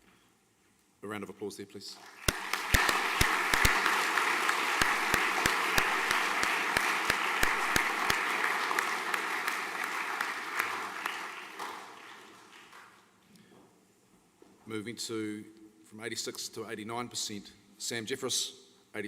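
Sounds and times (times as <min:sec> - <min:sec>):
audience applauding: 0:02.0 - 0:13.0
single loud claps: 0:02.1 - 0:12.9.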